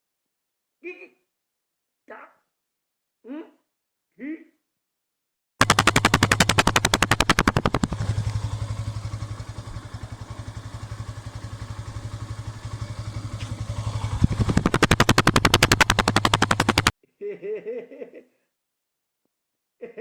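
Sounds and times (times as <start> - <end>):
motorcycle exhaust popping: 5.6 - 16.9.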